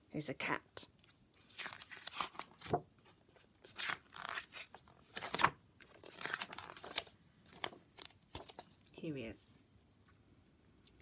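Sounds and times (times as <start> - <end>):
paper rustling and crinkling: 1.0 - 8.9.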